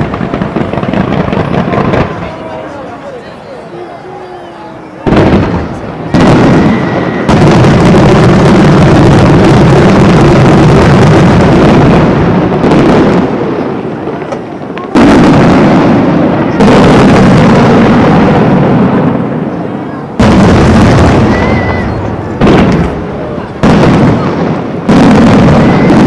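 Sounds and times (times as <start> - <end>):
fireworks bursting: 0.0 - 26.0.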